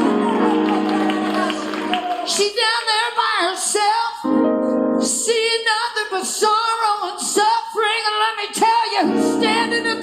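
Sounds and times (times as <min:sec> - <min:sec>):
instrumental accompaniment: 0:00.0 - 0:02.3
woman singing gospel: 0:00.0 - 0:04.4, 0:05.0 - 0:10.0.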